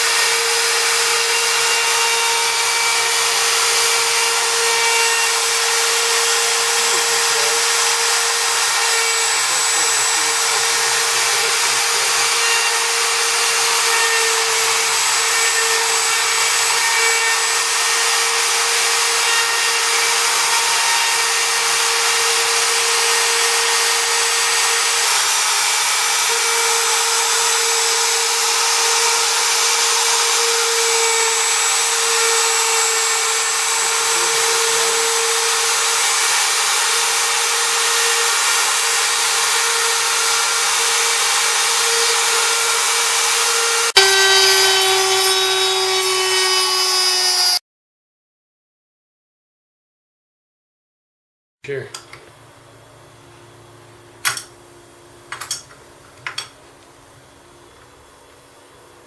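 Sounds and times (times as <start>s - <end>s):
engraving machine spindle whine: 0.0s - 47.6s.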